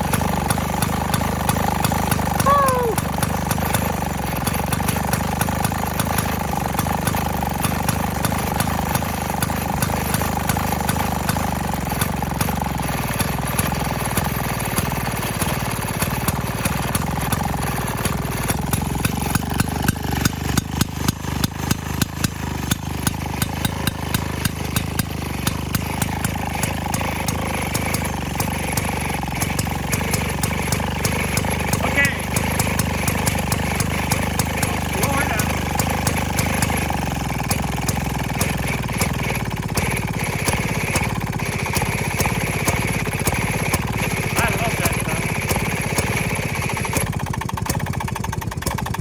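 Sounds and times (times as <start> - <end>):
washing machine engine popping: 16.0 - 49.0.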